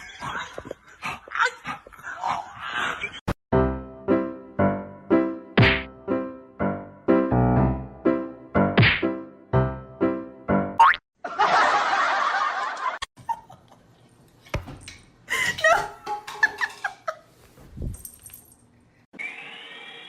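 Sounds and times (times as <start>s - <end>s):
people laughing: 11.2s - 13.8s.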